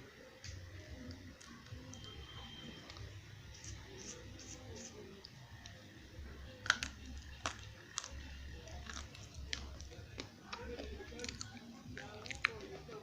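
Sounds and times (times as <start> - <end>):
soft chewing: 0.4 - 13.0
clay crunched between teeth: 6.6 - 12.6.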